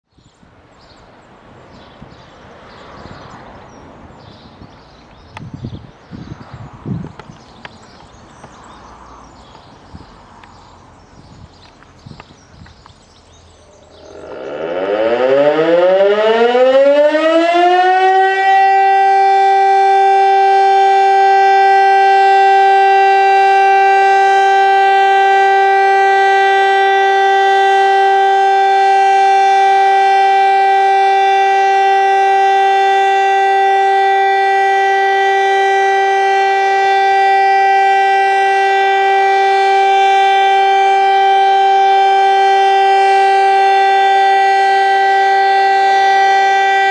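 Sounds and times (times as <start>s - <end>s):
electric motor siren winding up: 13.7s - 46.9s.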